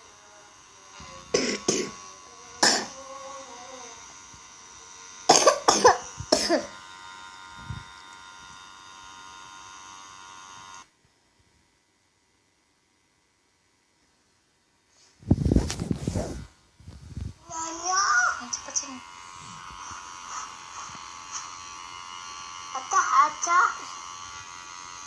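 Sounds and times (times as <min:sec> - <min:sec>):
nebulizer humming: 0:00.0 - 0:10.9, 0:15.6 - 0:25.0
child coughing: 0:01.3 - 0:02.0, 0:02.6 - 0:03.0, 0:05.3 - 0:06.8.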